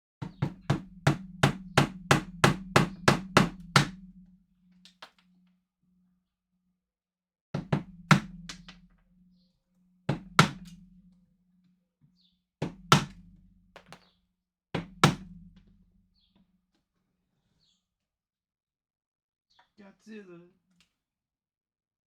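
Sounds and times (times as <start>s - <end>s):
hammer chipping material: 0.2s - 4.0s, 10.1s - 10.8s, 12.6s - 13.2s.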